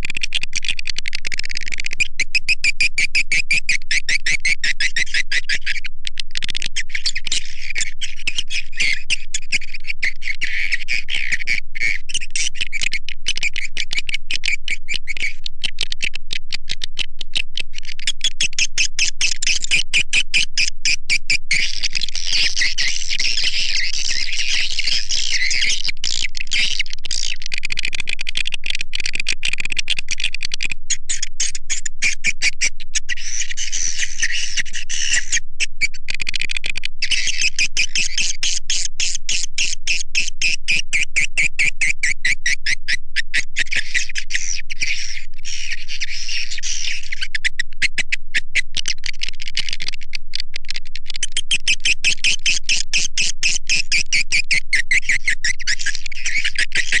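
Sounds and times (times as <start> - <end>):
high-pitched bird twittering chirps: 18.0 - 26.8, 31.1 - 36.0, 37.0 - 48.1, 51.3 - 57.0.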